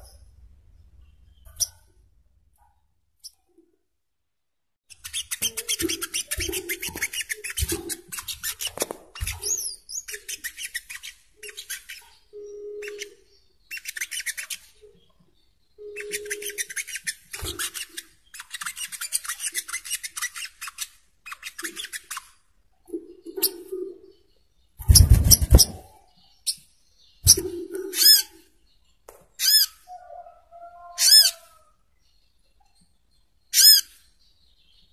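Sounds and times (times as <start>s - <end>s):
sunbird high-pitched twittering: 9.2s - 19.4s.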